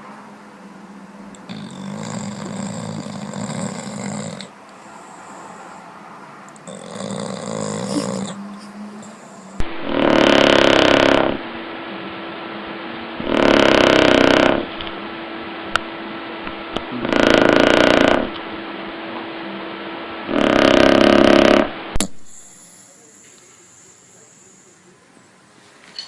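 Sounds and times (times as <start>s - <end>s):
dog snoring loudly: 1.3s - 5.8s, 6.6s - 11.4s, 13.2s - 14.8s, 16.8s - 18.4s, 20.2s - 22.4s.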